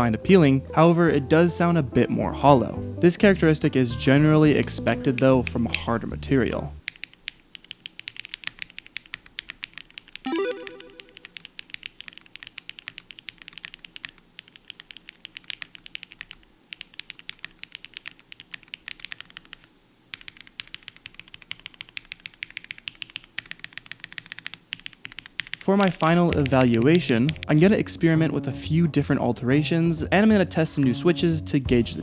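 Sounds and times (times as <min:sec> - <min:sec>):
fast typing on mechanical keyboard: 0:06.8 - 0:10.2, 0:10.9 - 0:27.5
loud pitched tone: 0:10.3 - 0:11.3.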